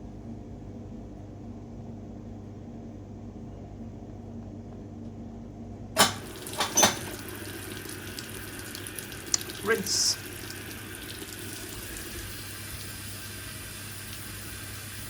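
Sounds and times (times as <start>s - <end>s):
washing machine humming: 0.0s - 15.0s
loud clunk: 6.0s - 7.2s
hiss of water filling: 6.0s - 15.0s.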